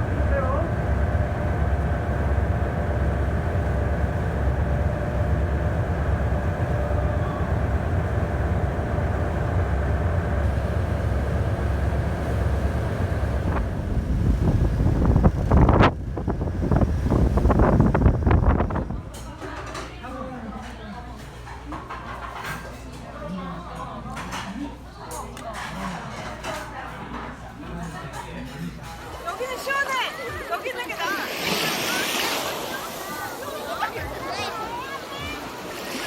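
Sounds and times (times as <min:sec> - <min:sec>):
low engine drone: 0:00.0 - 0:19.0
wind buffeting microphone: 0:00.0 - 0:19.2.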